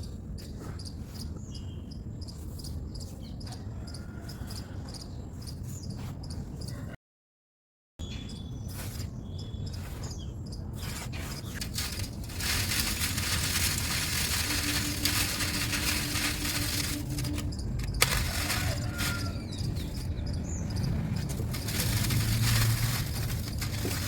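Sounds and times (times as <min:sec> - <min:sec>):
dusty material crumbling and falling: 0:11.4 - 0:20.2, 0:21.0 - 0:24.0.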